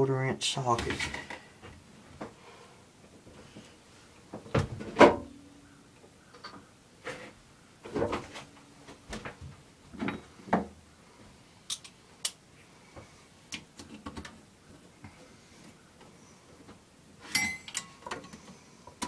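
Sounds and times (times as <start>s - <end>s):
socket wrench and metal parts clinking: 17.2s - 18.0s.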